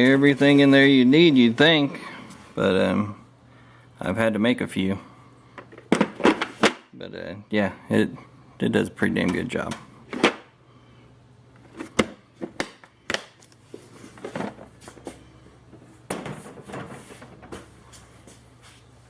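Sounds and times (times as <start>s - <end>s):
faint steady low hum: 0.0s - 19.0s
scraping and rustling: 13.6s - 19.0s.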